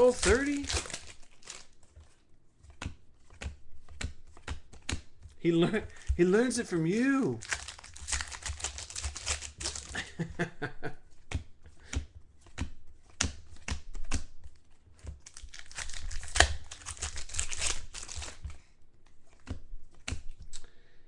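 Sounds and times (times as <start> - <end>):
wrappers crinkling and tearing: 0.0 - 2.2, 5.9 - 10.3, 15.2 - 18.6
cards clicking and tapping: 0.0 - 20.7.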